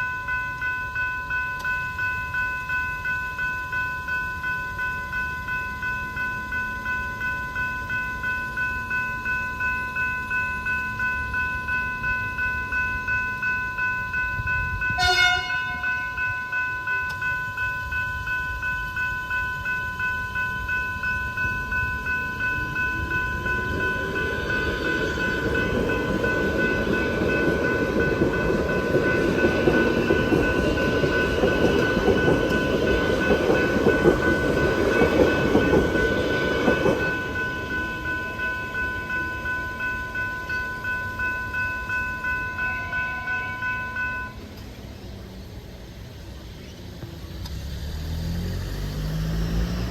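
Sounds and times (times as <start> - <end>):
level crossing bell ringing: 0.0 - 44.5
train rumbling past: 0.0 - 49.9
train horn blast: 15.0 - 16.0.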